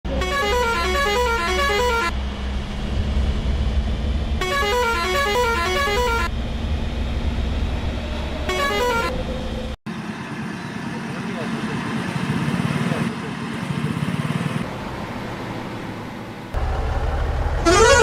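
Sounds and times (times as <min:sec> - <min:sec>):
bus musical horn tune: 0:00.1 - 0:02.2, 0:04.4 - 0:06.3, 0:08.5 - 0:09.2, 0:17.6 - 0:18.0
bus engine rumbling: 0:00.1 - 0:18.0.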